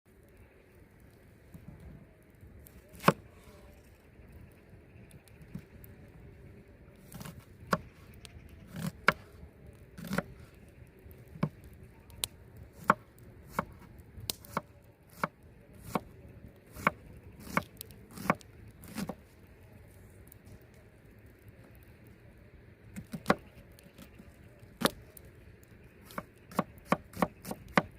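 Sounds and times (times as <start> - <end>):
knife chopping on cutting board: 10.0 - 10.2.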